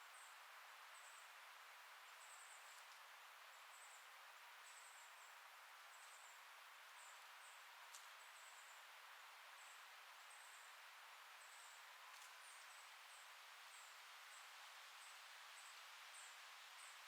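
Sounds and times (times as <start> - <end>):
soft hiss: 0.0 - 17.0.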